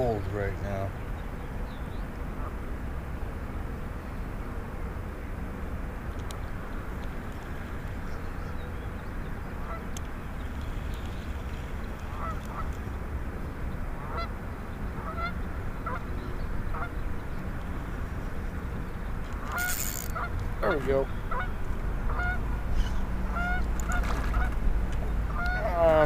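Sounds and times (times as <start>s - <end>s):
geese honking: 9.6s - 9.9s, 11.9s - 12.8s, 14.0s - 14.3s, 14.9s - 16.1s, 16.7s - 17.0s, 19.4s - 24.6s, 25.3s - 25.9s.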